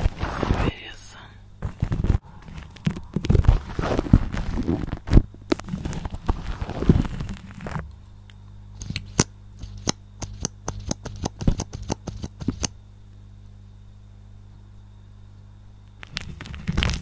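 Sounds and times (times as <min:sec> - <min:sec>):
low steady hum: 0:00.0 - 0:17.0
scratchy rubbing on microphone: 0:01.6 - 0:07.8, 0:09.6 - 0:12.7.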